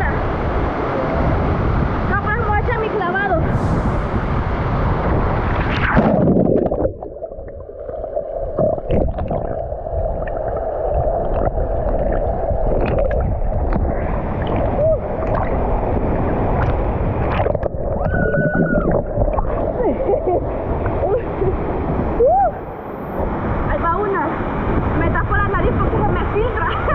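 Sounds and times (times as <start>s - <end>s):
underwater rumbling and gurgling: 0.0s - 26.9s
splash of water: 5.1s - 7.6s, 16.3s - 19.7s
bubbly clicks: 5.6s - 15.6s, 16.6s - 19.8s.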